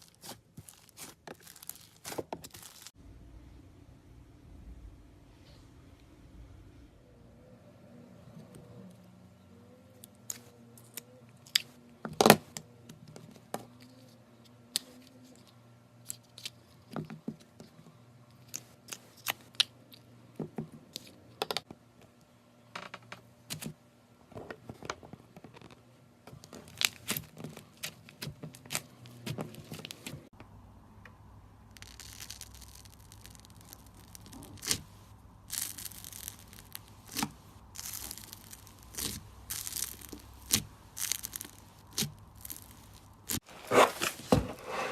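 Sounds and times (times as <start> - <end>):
slime popping and crackling: 0.0 - 3.0, 31.7 - 43.4.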